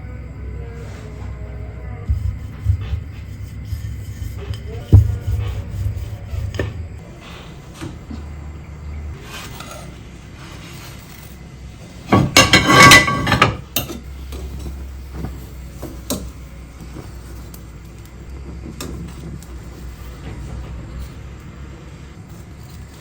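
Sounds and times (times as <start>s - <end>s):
low steady hum: 0.0s - 22.8s
dishes and utensils clinking: 12.1s - 16.3s.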